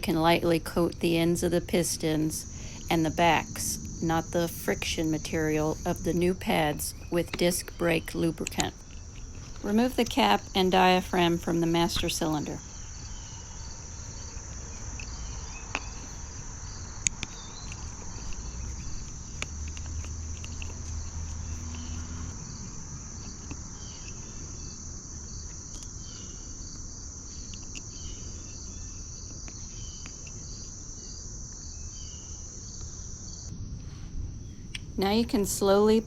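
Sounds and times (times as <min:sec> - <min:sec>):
crickets chirping: 0:00.0 - 0:36.0.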